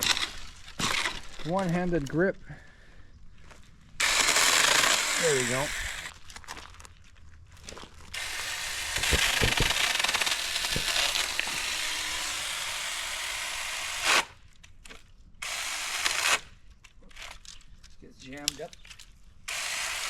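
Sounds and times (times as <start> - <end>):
mini chainsaw cutting branch: 4.0 - 6.1, 8.1 - 14.3, 15.4 - 16.5, 19.5 - 20.0
knocks: 9.0 - 9.8.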